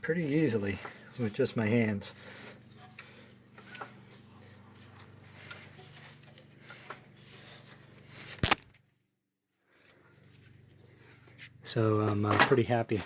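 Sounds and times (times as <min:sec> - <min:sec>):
faint clicks and scrapes: 0:00.2 - 0:08.4.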